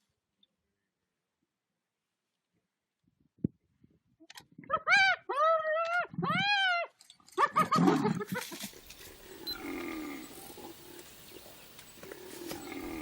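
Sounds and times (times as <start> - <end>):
animal wailing cry: 4.7 - 6.9, 9.2 - 11.0, 12.1 - 13.0
steady background hiss: 8.4 - 13.0
low animal calls: 8.8 - 13.0
harsh noisy animal cry: 9.0 - 11.1, 12.0 - 13.0.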